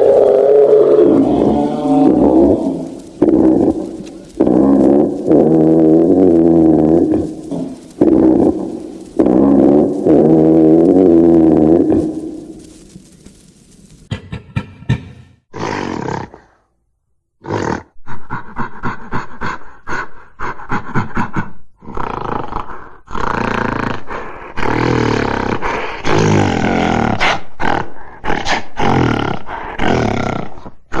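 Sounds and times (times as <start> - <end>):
gorilla creature roars: 0.0 - 12.5.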